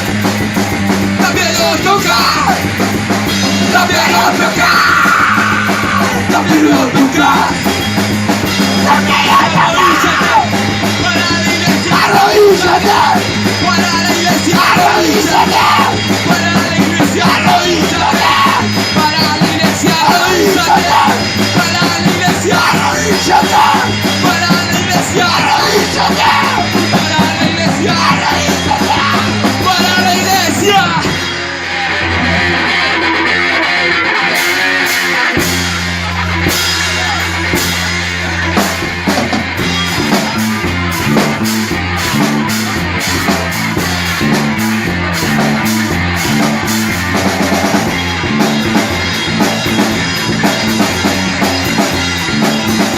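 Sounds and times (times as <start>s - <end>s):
driving drum and bass: 0.0s - 52.9s
punk rock band playing: 0.0s - 52.9s
shouted vocals: 1.2s - 52.9s.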